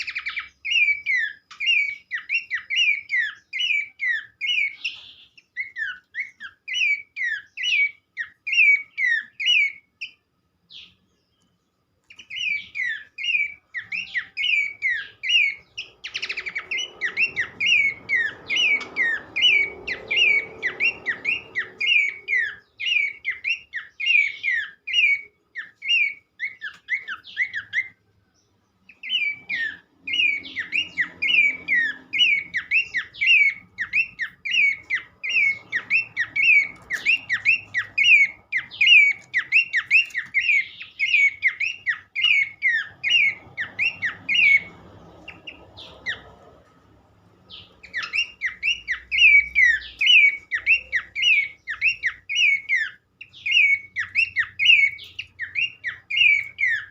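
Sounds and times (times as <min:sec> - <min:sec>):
bird singing whistled notes: 0:00.0 - 0:46.4, 0:47.4 - 0:56.9.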